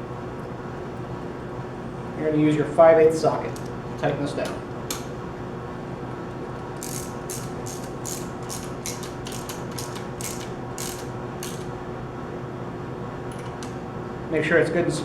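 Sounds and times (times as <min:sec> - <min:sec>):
ratchet wrench clicking: 0:06.8 - 0:11.7.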